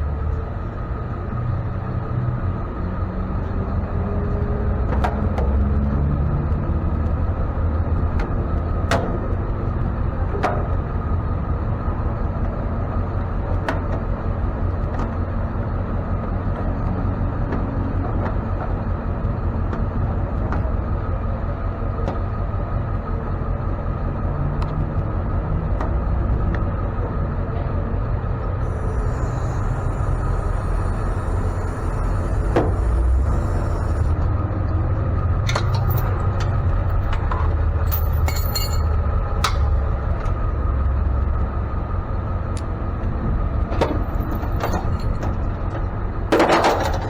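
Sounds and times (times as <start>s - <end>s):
truck engine and road rumble: 0.0s - 47.0s
small rattles and knocks: 43.7s - 47.0s.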